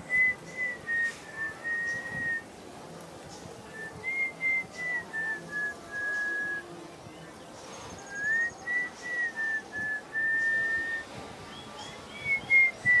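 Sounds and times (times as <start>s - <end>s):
person whistling a tune: 0.1s - 2.4s, 8.2s - 11.1s, 12.2s - 13.0s.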